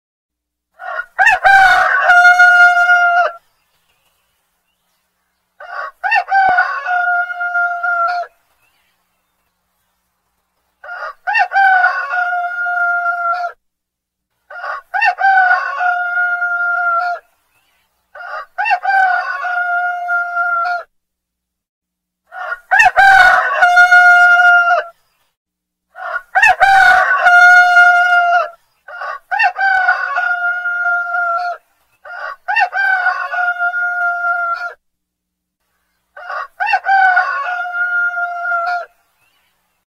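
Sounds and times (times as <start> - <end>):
rooster crowing: 0.8 - 3.4, 5.6 - 8.4, 10.8 - 13.6, 14.5 - 17.2, 18.1 - 20.9, 22.3 - 25.0, 25.9 - 34.8, 36.2 - 39.0.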